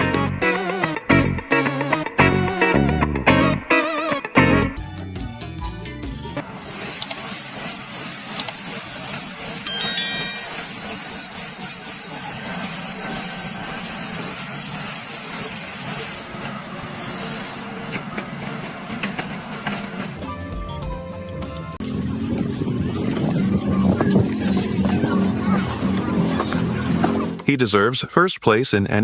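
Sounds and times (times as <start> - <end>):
machine hissing: 6.4 - 9.6.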